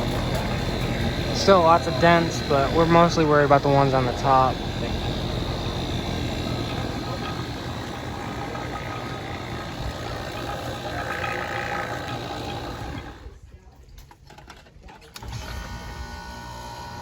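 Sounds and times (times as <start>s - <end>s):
motor running hum: 0.0s - 13.4s, 15.2s - 17.0s.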